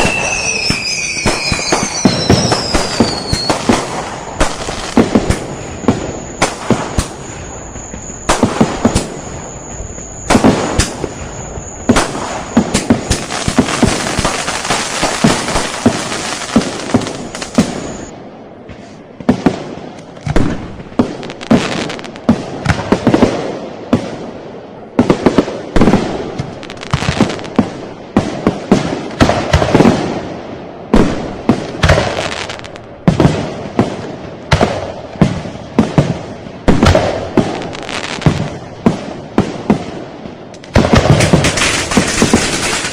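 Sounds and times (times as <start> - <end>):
high thin whistle: 0.0 - 3.7, 5.6 - 14.0, 16.5 - 18.1
sharp firework bangs: 0.0 - 30.3, 30.9 - 42.9
firecrackers crackling: 0.0 - 42.9.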